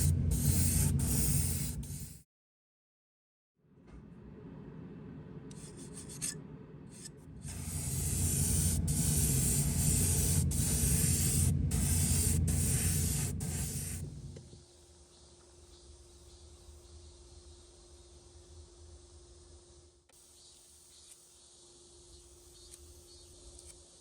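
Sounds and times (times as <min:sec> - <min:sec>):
airbrush spraying hiss: 0:00.0 - 0:02.2, 0:07.5 - 0:14.4.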